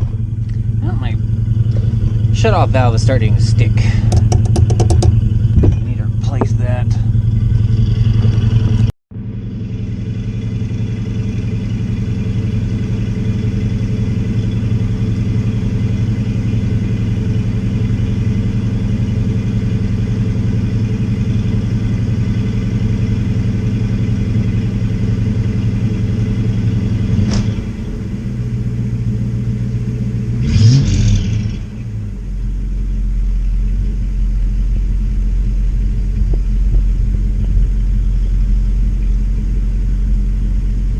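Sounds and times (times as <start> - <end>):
engine humming: 0.0 - 40.9
brief rattle: 3.8 - 7.2.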